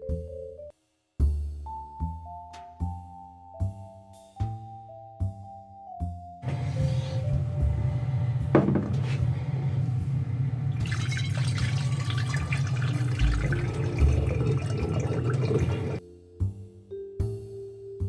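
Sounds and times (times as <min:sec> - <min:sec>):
tap water running: 0:06.4 - 0:16.0.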